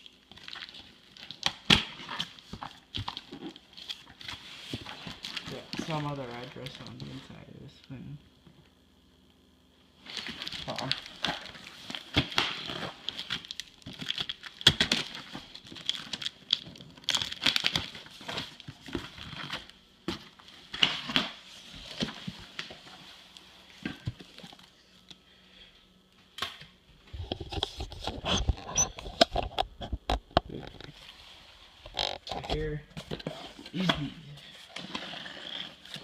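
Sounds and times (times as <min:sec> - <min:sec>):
packing material rustling: 0:10.0 - 0:24.7.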